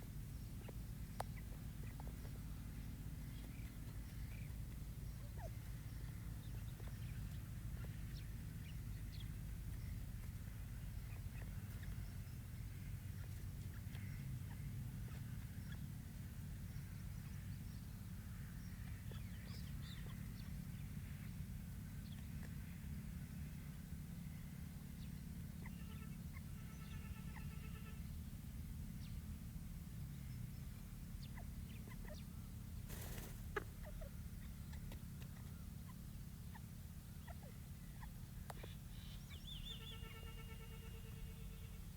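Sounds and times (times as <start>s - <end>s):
partridge chick calling: 33.0s - 40.3s.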